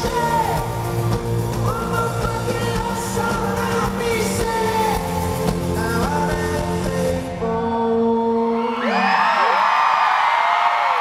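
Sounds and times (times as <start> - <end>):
pop-rock band playing: 0.0 - 8.0
man singing: 0.0 - 9.4.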